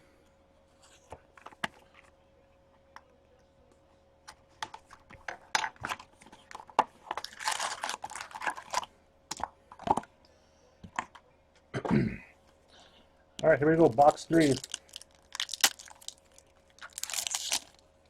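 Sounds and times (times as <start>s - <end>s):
plastic wrap tearing and crumpling: 7.2s - 8.8s, 14.0s - 17.8s.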